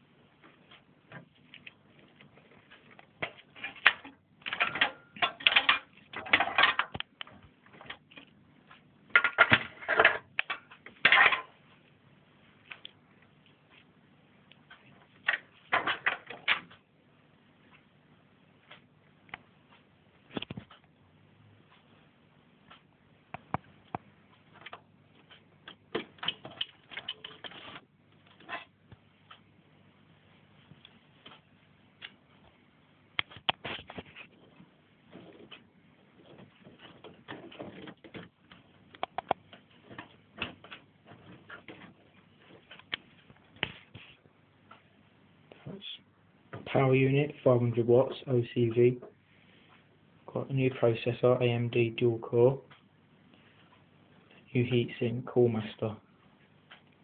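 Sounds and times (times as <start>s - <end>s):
computer parts clicking and rattling: 0.7s - 8.3s, 9.1s - 11.6s, 14.6s - 16.8s, 23.4s - 29.4s, 35.2s - 43.5s
taps and rattles of hardware: 2.7s - 8.3s, 15.2s - 16.8s, 23.4s - 28.7s
computer hardware clicks: 36.8s - 41.8s.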